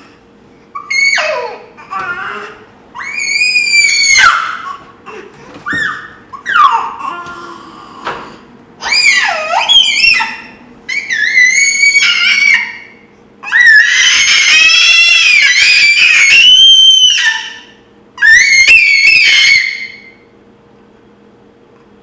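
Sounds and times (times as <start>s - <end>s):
person making shrill screeching noises: 3.0s - 4.7s, 18.2s - 20.1s.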